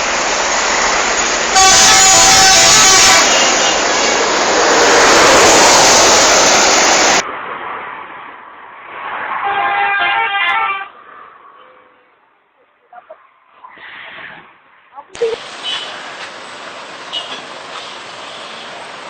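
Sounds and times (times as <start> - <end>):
bus noise: 0.0 - 8.1, 15.1 - 19.0
bus multi-tone horn: 1.5 - 4.0, 9.4 - 10.9, 15.6 - 16.0, 17.1 - 18.8.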